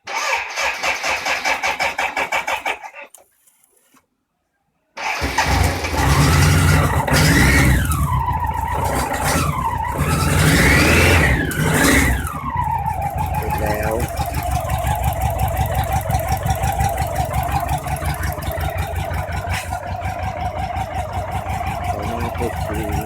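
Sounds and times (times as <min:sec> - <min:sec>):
starter motor cranking: 0:05.0 - 0:23.0
motorcycle engine revving: 0:05.1 - 0:23.0.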